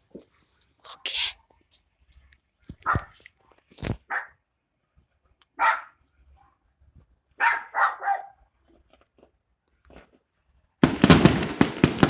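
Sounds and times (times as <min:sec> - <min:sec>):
dog barking: 0:02.8 - 0:03.2, 0:04.0 - 0:04.4, 0:05.6 - 0:06.6, 0:07.4 - 0:08.5.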